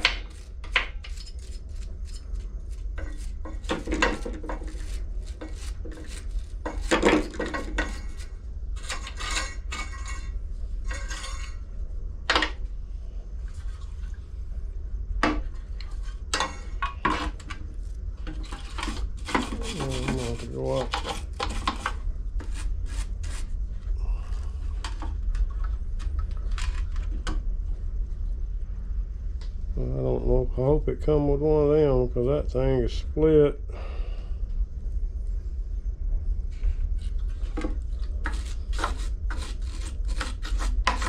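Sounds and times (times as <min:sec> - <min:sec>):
brushing or scraping: 0:00.0 - 0:11.6, 0:15.6 - 0:23.6, 0:36.5 - 0:41.0
steady low hum: 0:00.0 - 0:41.0.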